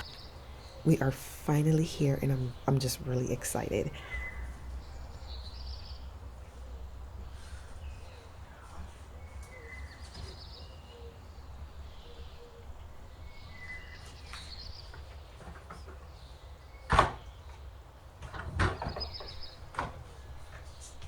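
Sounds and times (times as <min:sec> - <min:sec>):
small birds chirping: 0:00.0 - 0:18.1, 0:18.8 - 0:21.0.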